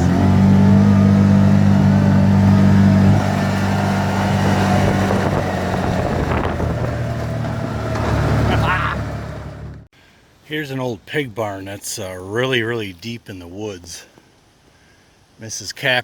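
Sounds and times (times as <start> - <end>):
engine running at high revs: 0.0 - 9.9.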